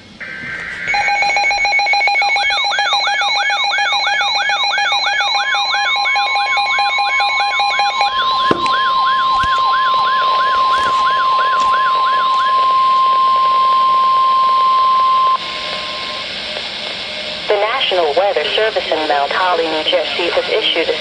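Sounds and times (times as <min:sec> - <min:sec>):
radio hiss: 0:00.0 - 0:01.2, 0:15.4 - 0:21.0
warbling siren: 0:00.2 - 0:16.5
long steady alarm tone: 0:00.2 - 0:21.0
fast alternating two-pitch beep: 0:00.9 - 0:16.2.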